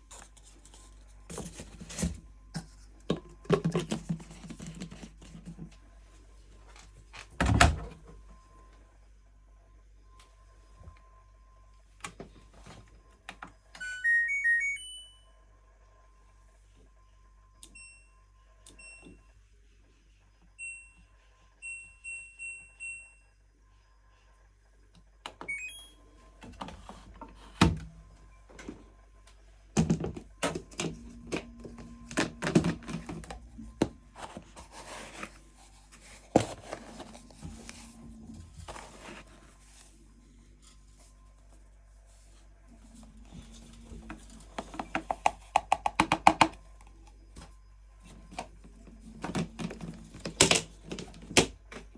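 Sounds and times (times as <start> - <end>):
low machine hum: 0.0 - 45.6
washing machine panel beeps: 13.8 - 15.3, 17.6 - 19.2, 20.6 - 23.2, 25.4 - 26.2.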